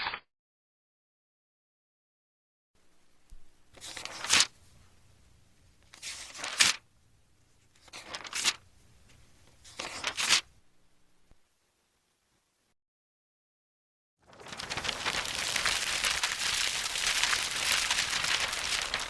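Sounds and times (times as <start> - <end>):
book pages turning: 14.2 - 19.0.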